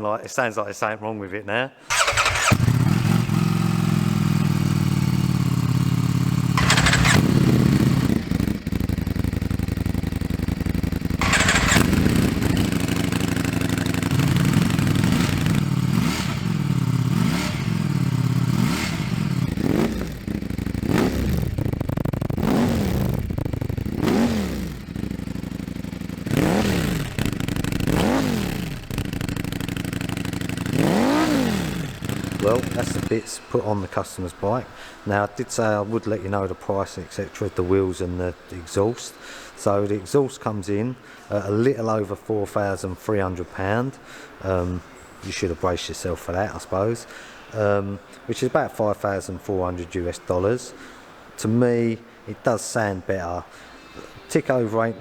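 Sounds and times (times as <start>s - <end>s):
motorcycle engine revving: 1.9s - 33.1s.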